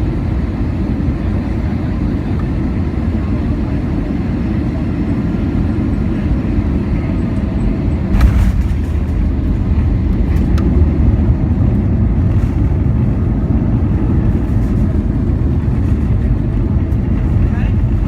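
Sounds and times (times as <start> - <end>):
airplane cabin rumble: 0.0 - 18.0
sharp thump: 8.1 - 10.7.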